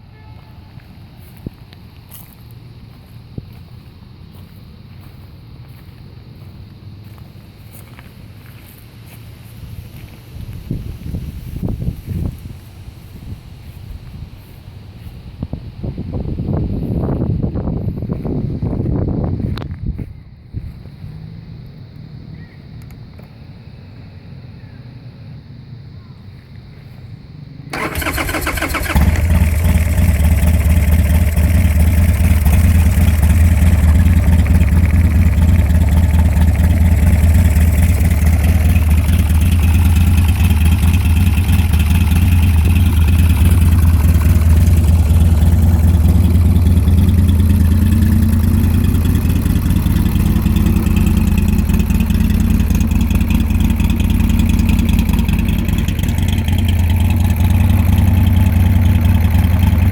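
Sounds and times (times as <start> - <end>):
motorcycle engine idling: 27.7 - 59.9
electric starter cranking: 27.8 - 30.7.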